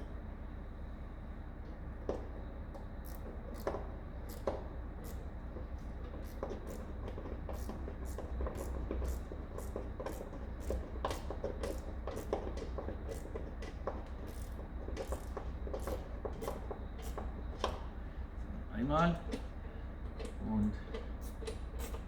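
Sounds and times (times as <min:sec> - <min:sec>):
hand tools clicking and knocking: 0:06.0 - 0:17.8.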